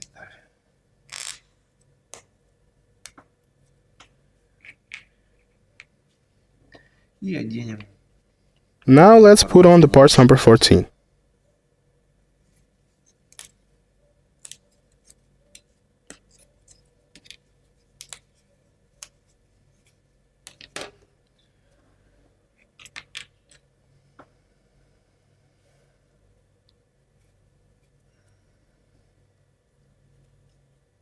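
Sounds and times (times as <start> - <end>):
wooden model parts clicking: 4.0 - 6.0, 14.4 - 17.4, 20.4 - 21.0, 22.6 - 23.7.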